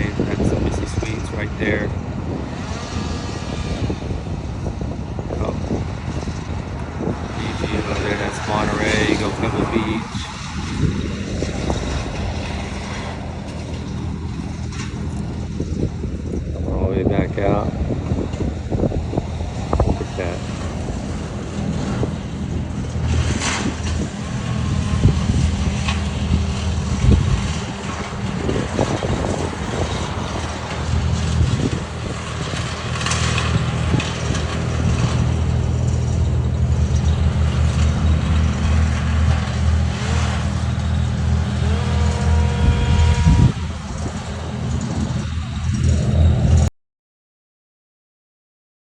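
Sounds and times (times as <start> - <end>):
car engine running: 0.0 - 46.7
road and wind noise: 0.0 - 46.7.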